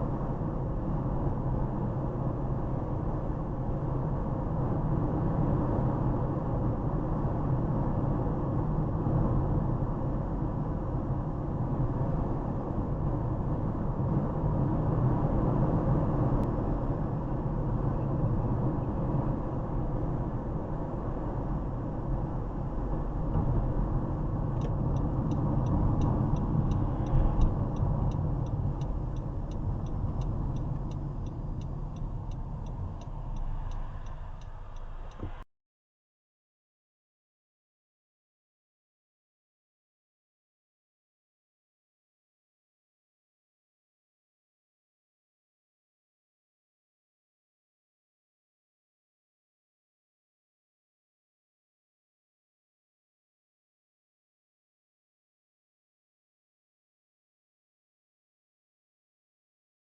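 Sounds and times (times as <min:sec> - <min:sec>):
road and engine rumble in car: 0:00.0 - 0:35.5
turn signal ticking: 0:24.5 - 0:35.4.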